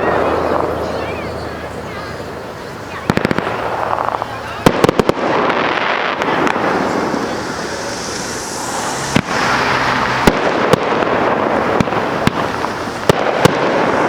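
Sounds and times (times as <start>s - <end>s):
fireworks crackle and hiss: 0.0s - 14.0s
fireworks shells bursting: 3.0s - 14.0s.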